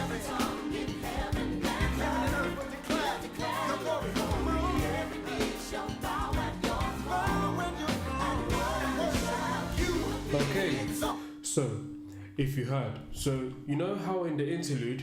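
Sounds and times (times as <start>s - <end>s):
gospel song with band: 0.0s - 11.4s.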